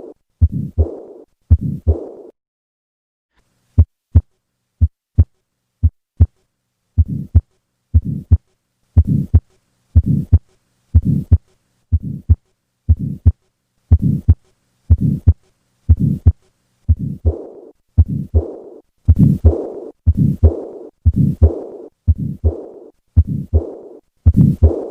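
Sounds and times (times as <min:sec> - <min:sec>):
harsh heart murmur: 0:00.0 - 0:02.3, 0:07.0 - 0:07.4, 0:08.0 - 0:08.4, 0:09.0 - 0:09.4, 0:10.0 - 0:10.4, 0:11.0 - 0:11.4, 0:12.0 - 0:24.9
heartbeat through stethoscope: 0:00.0 - 0:02.3, 0:03.8 - 0:06.4, 0:07.0 - 0:08.4, 0:09.0 - 0:24.9.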